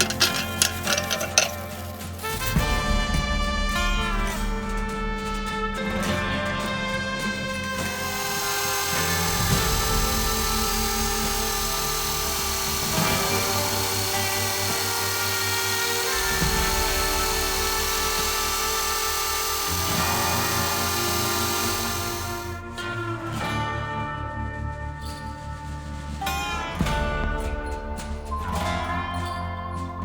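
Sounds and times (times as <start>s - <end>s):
small electric motor whirring: 0.0s - 2.4s, 7.6s - 22.6s
background music: 0.0s - 30.0s.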